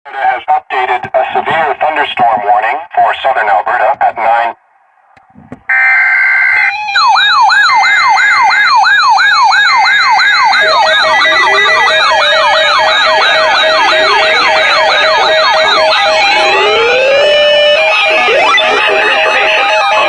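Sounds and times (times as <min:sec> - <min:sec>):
electronic warning siren yelping: 0:05.7 - 0:20.0
steady beeping tones: 0:10.0 - 0:20.0.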